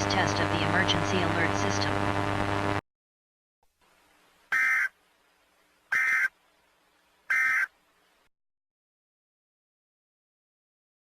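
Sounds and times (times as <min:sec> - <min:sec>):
harsh electronic data bursts: 0:00.0 - 0:02.8.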